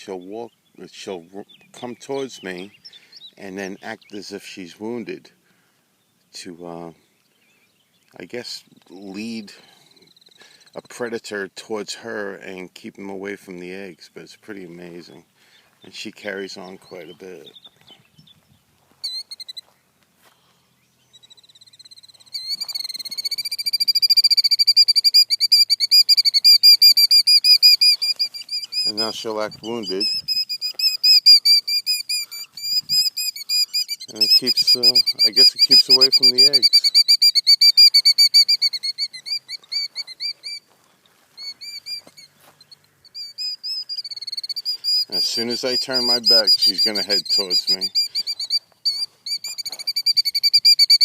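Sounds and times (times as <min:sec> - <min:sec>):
bird shrill trilling alarm call: 0:19.0 - 0:19.7, 0:21.0 - 0:40.7, 0:41.3 - 0:51.0.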